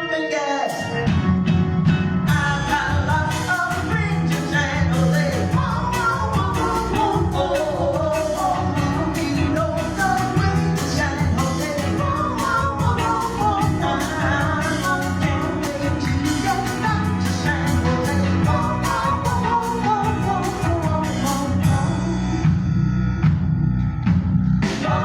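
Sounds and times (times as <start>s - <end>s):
drum kit beat: 0.7s - 22.7s
woman singing with band: 2.3s - 21.9s.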